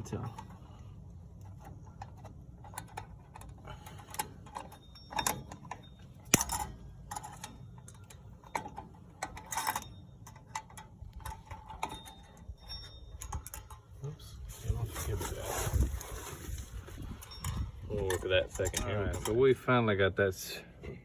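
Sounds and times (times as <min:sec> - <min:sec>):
metallic clicks of brake hardware: 0:01.4 - 0:13.9.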